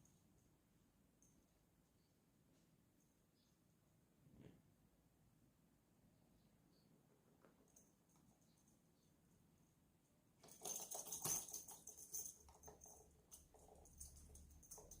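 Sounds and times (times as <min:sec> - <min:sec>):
cat toy rustling and clicking: 0:10.4 - 0:15.0.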